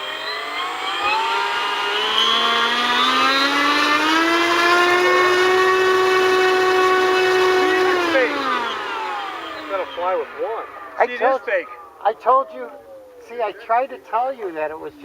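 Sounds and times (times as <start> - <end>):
model plane electric motor whine: 0.0 - 12.0.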